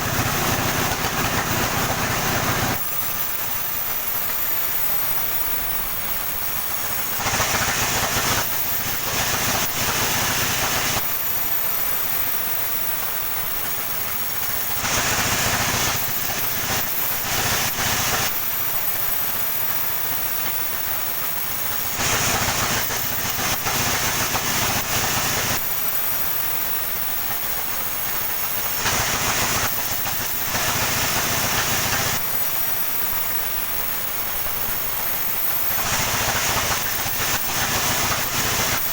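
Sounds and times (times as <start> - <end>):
machine hum: 0.0 - 11.0
saw cutting through wood: 0.0 - 38.9.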